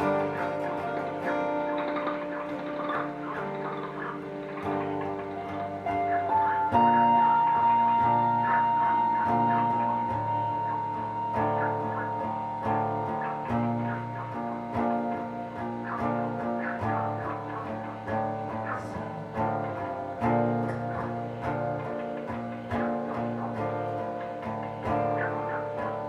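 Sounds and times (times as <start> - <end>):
guitar chords strummed: 0.0 - 26.0.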